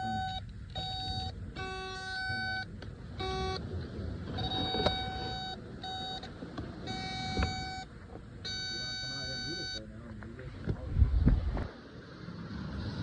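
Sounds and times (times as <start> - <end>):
warning buzzer beeping: 0.0 - 3.6, 4.4 - 6.3, 6.9 - 9.8.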